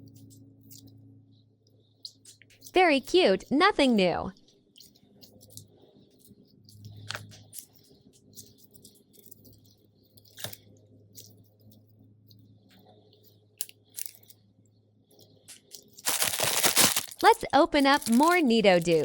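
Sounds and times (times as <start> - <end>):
low steady hum: 0.0 - 19.0
squishy toy clicks and crackles: 13.6 - 14.4, 15.5 - 19.0.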